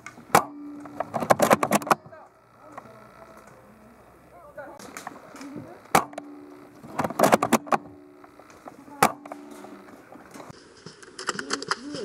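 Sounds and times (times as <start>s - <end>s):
sharp clicks and knocks: 0.0s - 3.6s, 4.8s - 11.8s.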